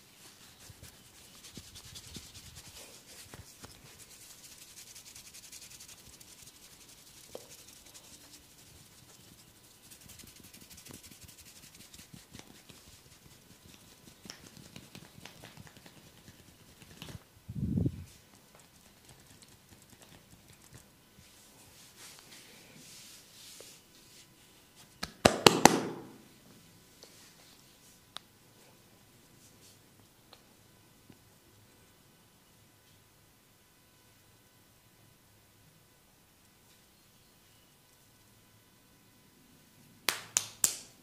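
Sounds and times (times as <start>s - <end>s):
hands rubbing skin: 0.2s - 17.2s, 18.1s - 26.1s.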